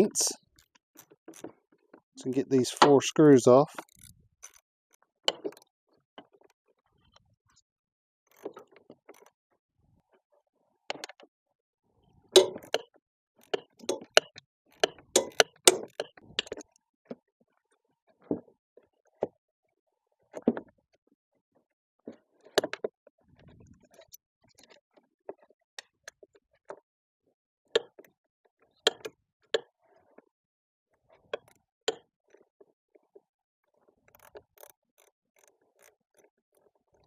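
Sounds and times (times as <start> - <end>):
hand ratchet clicking: 13.4 - 16.5.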